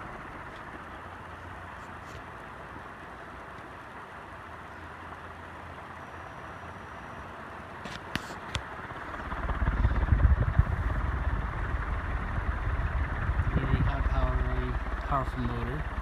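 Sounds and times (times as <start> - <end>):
ceiling fan humming: 0.0 - 16.0
low rumble: 9.2 - 16.0.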